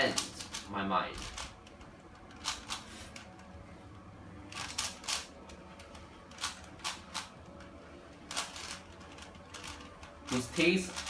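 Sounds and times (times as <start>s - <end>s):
puzzle cube clicking: 0.0s - 3.2s.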